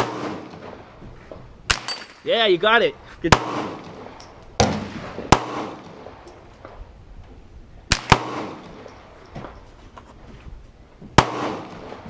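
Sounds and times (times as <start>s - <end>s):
gunshots with reverberation: 0.0s - 1.0s, 1.6s - 2.3s, 3.2s - 6.9s, 7.9s - 9.6s, 11.1s - 12.0s.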